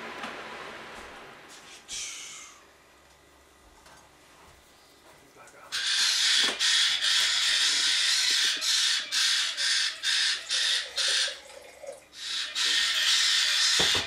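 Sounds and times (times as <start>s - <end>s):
parrot chicks squawking: 5.7s - 11.5s, 12.2s - 14.0s.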